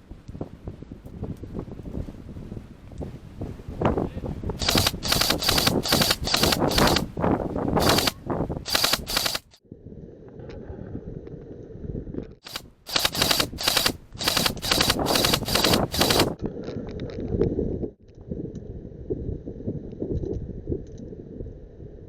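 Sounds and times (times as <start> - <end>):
airsoft guns firing bursts: 4.6 - 7.1, 7.8 - 9.6, 12.4 - 16.4.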